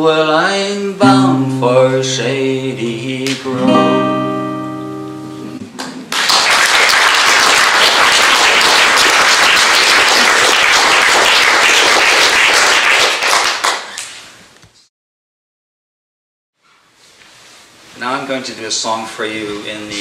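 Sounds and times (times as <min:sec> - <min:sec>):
acoustic guitar chord ringing: 0:01.0 - 0:05.7
audience applauding: 0:05.8 - 0:14.2.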